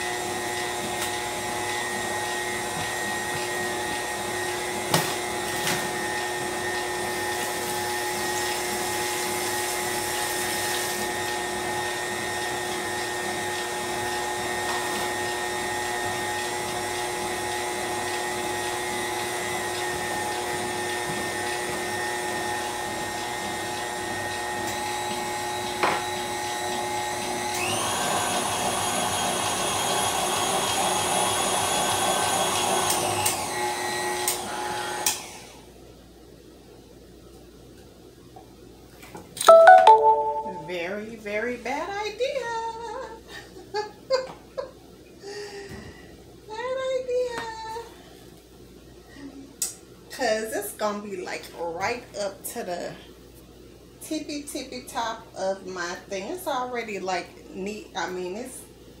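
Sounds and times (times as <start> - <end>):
stand mixer beating batter: 0.0 - 35.6.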